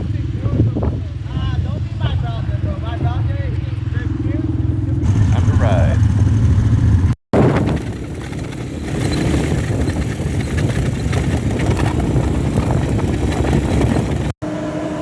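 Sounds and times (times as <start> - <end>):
atv engine running: 4.6 - 14.4.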